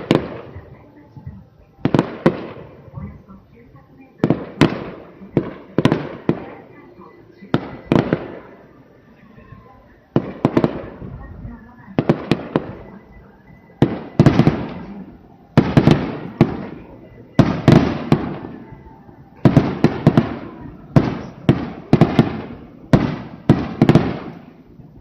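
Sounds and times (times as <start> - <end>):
sharp firework cracks: 13.8 - 14.9, 15.6 - 16.8, 17.4 - 18.6, 19.4 - 24.5
firework shells booming: 13.8 - 15.0, 15.6 - 18.8, 19.4 - 24.6.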